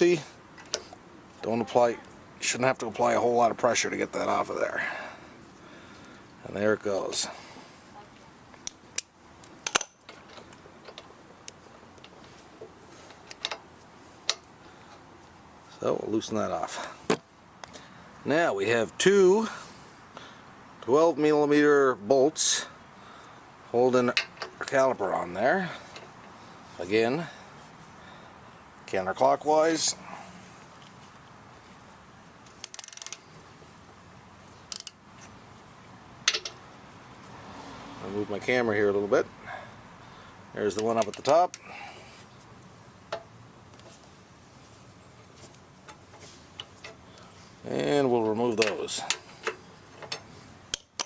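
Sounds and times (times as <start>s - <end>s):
socket ratchet clicking: 32.6s - 33.2s, 34.7s - 35.0s, 48.6s - 51.0s.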